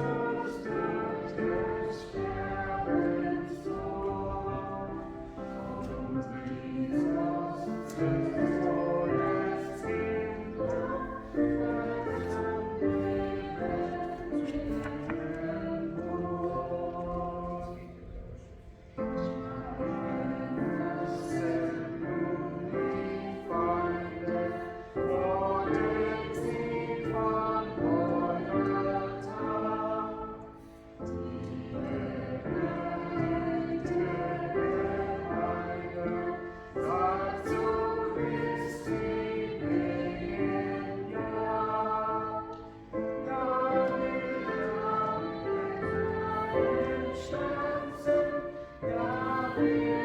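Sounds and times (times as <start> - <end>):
choir singing a hymn: 0.0 - 50.0.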